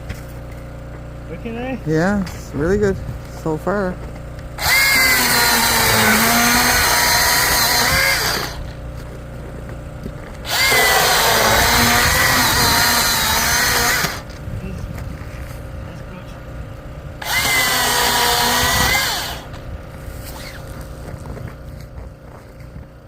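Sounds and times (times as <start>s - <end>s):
electric chainsaw cutting wood: 4.6s - 9.3s, 10.0s - 14.4s, 17.2s - 20.9s.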